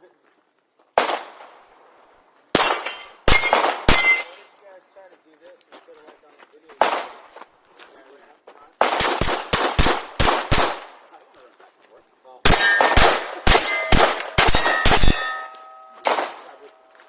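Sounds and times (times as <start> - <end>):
pistol shots: 1.0 - 1.6, 2.6 - 4.5, 6.8 - 7.3, 8.8 - 11.0, 12.4 - 16.8
steel plates ringing: 2.6 - 4.6, 12.5 - 17.0.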